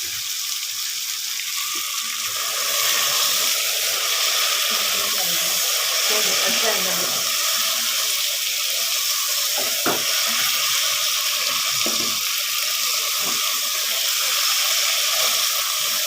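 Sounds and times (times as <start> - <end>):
curry sizzling in a pot: 0.0 - 16.0
spoon knocking against pot: 9.6 - 10.2, 11.8 - 12.2.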